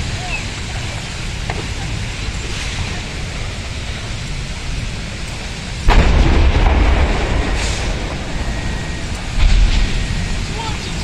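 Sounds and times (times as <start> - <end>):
steady background hiss: 0.0 - 11.0
gas cylinder explosion boom: 5.8 - 11.0.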